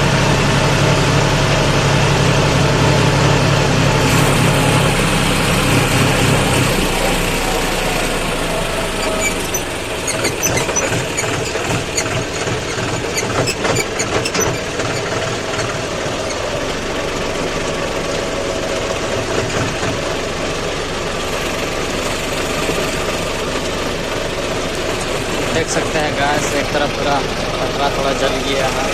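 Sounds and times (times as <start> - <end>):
tractor diesel engine running: 0.0 - 28.9
rattling knocks and clanks: 9.0 - 16.6.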